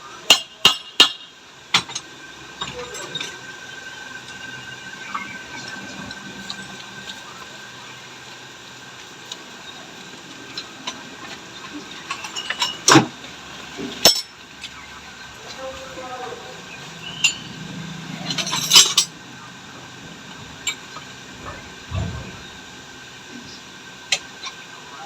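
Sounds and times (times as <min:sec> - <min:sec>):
metal tools clinking and tapping: 0:14.0 - 0:14.3, 0:18.2 - 0:19.1.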